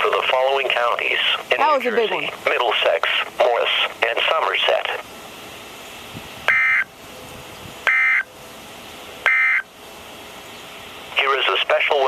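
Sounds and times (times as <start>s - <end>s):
buzzy two-tone digital data bursts: 6.5s - 6.9s, 7.9s - 8.3s, 9.3s - 9.6s.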